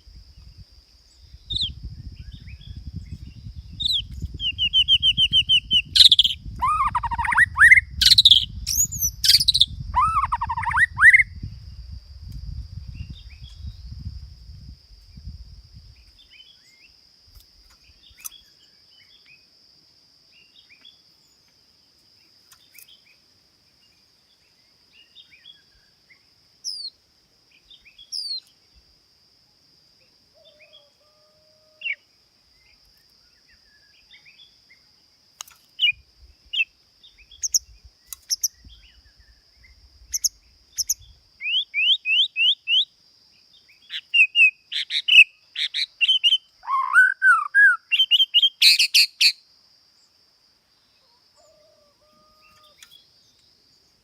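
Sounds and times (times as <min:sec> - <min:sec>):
songbird chirping and singing: 0:01.1 - 0:11.4, 0:17.7 - 0:19.4, 0:22.2 - 0:28.7, 0:30.3 - 0:42.9, 0:43.5 - 0:49.4, 0:50.8 - 0:54.0.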